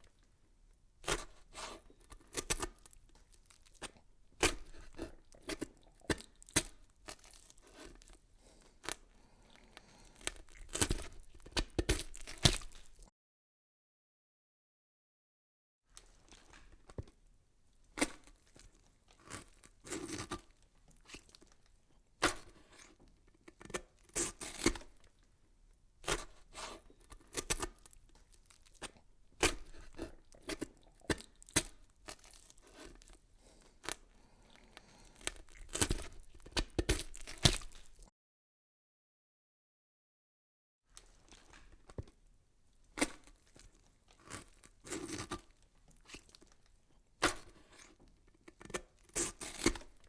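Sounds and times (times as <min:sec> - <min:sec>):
crackling and tearing noise: 0:01.1 - 0:13.1, 0:26.1 - 0:38.1, 0:42.8 - 0:50.0.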